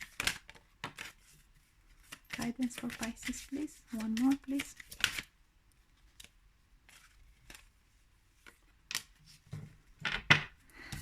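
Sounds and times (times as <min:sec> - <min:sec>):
cards snapping and sliding: 0:02.0 - 0:05.3, 0:06.2 - 0:07.7, 0:08.4 - 0:09.2.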